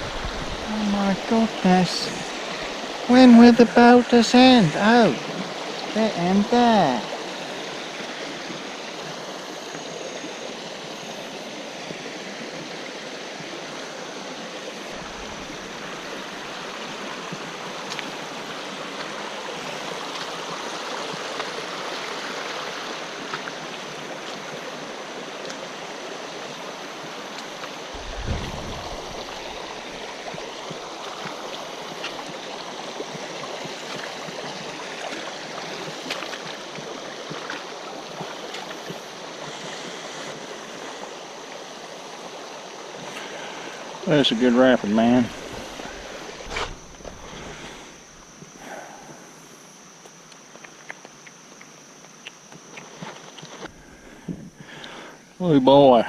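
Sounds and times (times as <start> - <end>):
water rushing over rocks: 0.0 - 48.8
low thump: 28.0 - 30.0.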